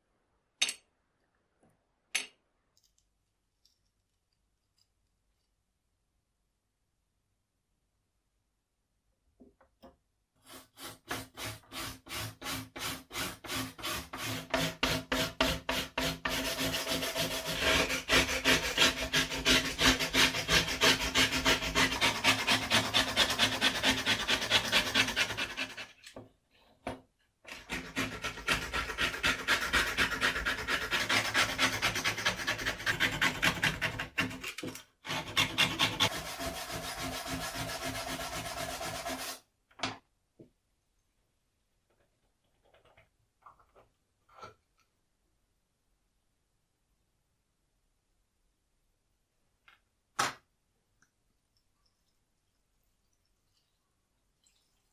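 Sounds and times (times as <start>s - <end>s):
hand filing across saw blade: 10.4s - 26.0s, 27.5s - 39.4s.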